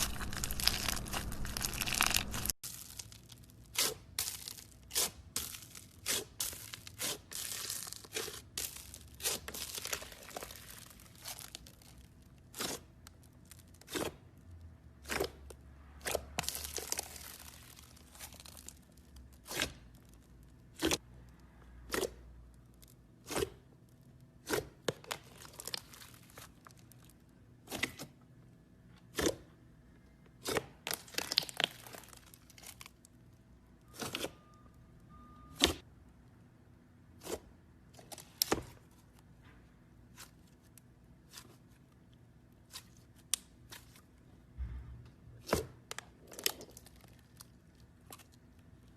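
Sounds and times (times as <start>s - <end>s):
slime crackling and tearing: 0.0s - 21.0s, 24.4s - 27.8s, 30.4s - 33.1s, 45.9s - 48.9s.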